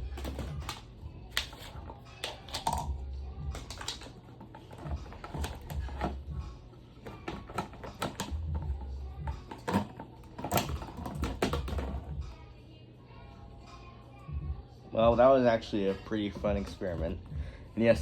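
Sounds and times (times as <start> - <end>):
plastic parts clicking and clacking: 0.1 - 2.9, 3.6 - 6.2, 7.0 - 8.5, 9.4 - 12.0.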